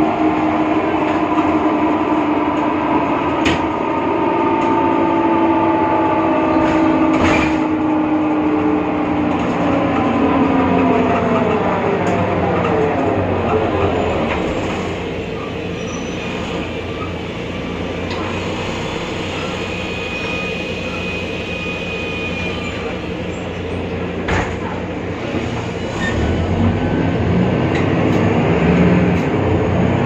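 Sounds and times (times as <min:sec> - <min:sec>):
bus diesel engine: 0:00.0 - 0:30.0.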